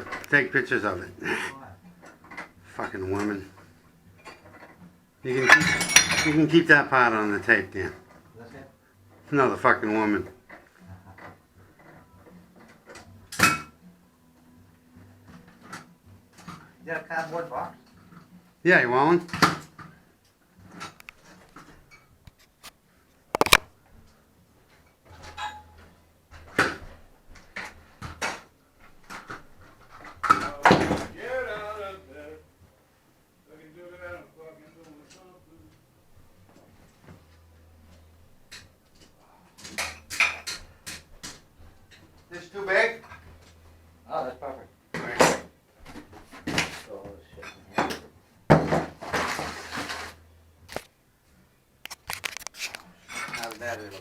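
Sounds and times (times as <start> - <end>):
porcelain clattering and scraping: 2.0 - 6.7, 25.0 - 31.0, 38.5 - 42.0, 45.0 - 50.2, 52.1 - 54.0
porcelain pieces clinking and clunking: 5.3 - 6.6.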